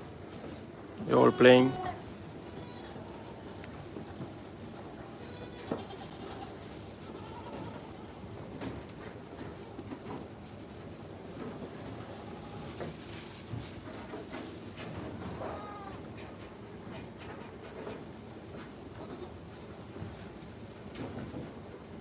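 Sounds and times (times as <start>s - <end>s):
steady background noise: 0.0s - 22.0s
goat kid bleating: 1.0s - 3.6s, 5.1s - 8.3s, 12.1s - 12.8s, 15.2s - 16.1s, 18.9s - 19.5s.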